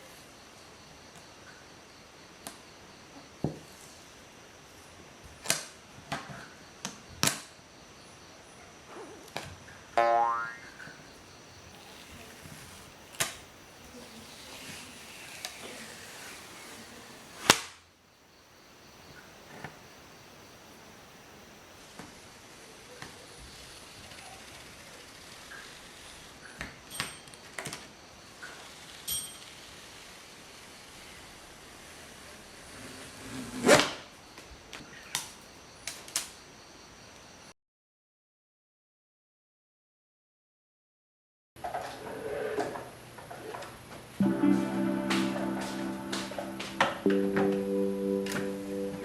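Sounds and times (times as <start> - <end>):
rising rustle: 11.7 - 17.5.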